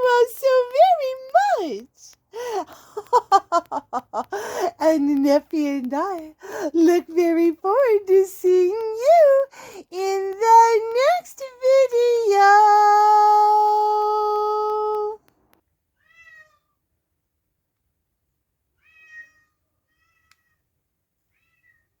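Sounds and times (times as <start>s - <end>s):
cat meowing: 16.0s - 16.8s, 18.8s - 20.6s, 21.3s - 22.0s.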